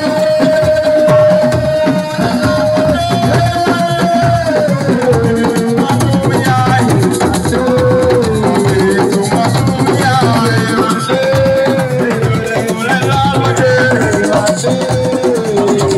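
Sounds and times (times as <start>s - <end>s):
hand drums and shakers: 0.0s - 15.9s.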